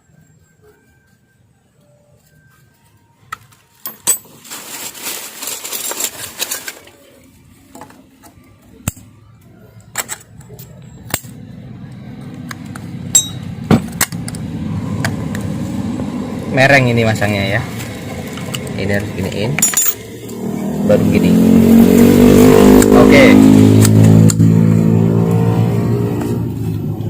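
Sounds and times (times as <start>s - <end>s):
scraping and rustling: 2.3s - 7.7s
metal parts clicking and knocking: 3.8s - 4.4s, 9.9s - 11.4s, 19.6s - 20.1s
low hum: 10.8s - 21.9s.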